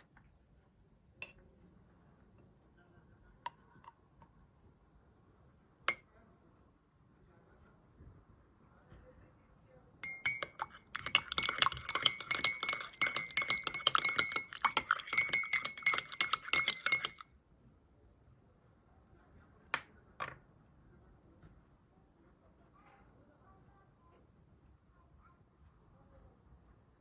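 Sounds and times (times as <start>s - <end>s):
spoon clinking in a glass: 10.0s - 17.2s
spoon tapping glass: 10.0s - 17.2s.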